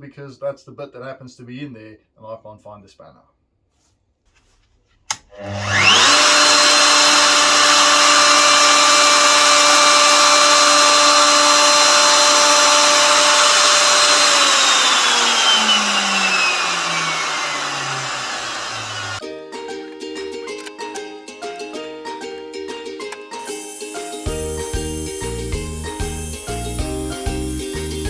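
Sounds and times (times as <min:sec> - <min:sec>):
wood router high whine: 0:05.4 - 0:19.2, 0:23.4 - 0:28.0.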